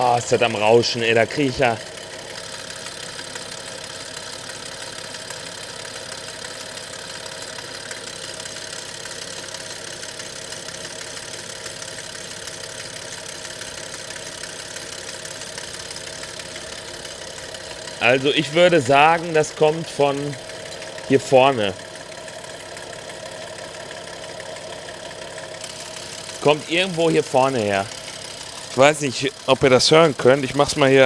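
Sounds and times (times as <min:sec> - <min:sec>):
car engine idling with clatter: 0:00.0 - 0:31.0.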